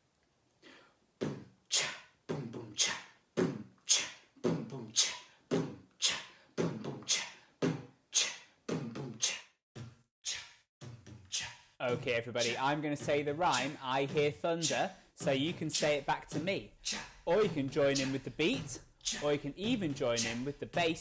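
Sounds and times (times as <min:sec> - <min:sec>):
percussion beat with low thumps: 0:05.5 - 0:05.8, 0:06.6 - 0:07.9, 0:10.8 - 0:21.0.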